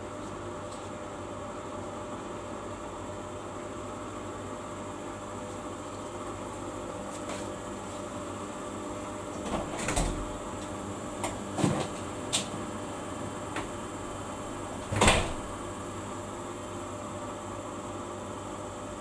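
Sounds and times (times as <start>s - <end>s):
washing machine humming: 0.0s - 19.0s.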